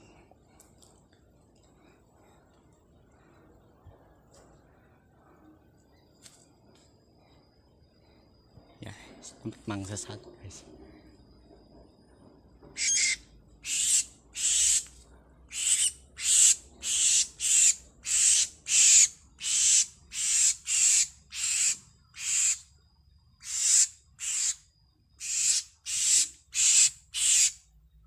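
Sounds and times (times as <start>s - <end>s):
bird giving harsh hissing rasps: 12.8s - 14.9s, 15.5s - 22.7s, 23.4s - 24.6s, 25.2s - 27.6s.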